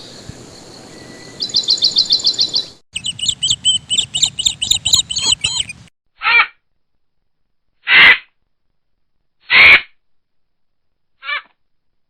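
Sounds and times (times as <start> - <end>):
small birds chirping: 0.0 - 5.9
short bird call: 3.0 - 5.9.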